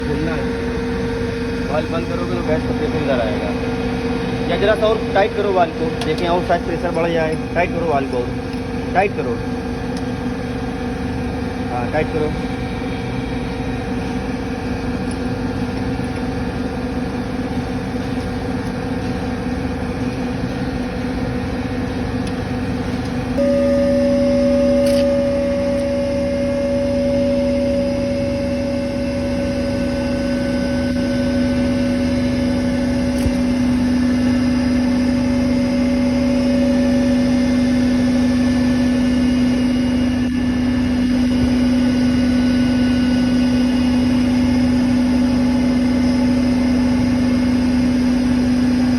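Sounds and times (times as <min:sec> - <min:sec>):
refrigeration compressor humming: 0:00.0 - 0:48.9.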